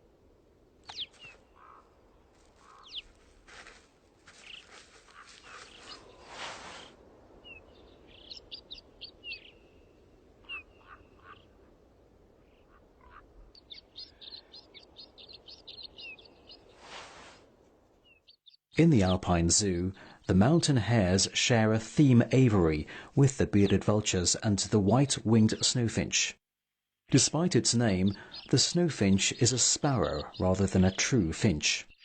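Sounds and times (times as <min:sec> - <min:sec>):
bird chirps: 0:00.8 - 0:01.9, 0:02.6 - 0:03.2, 0:04.4 - 0:11.7, 0:12.4 - 0:17.0.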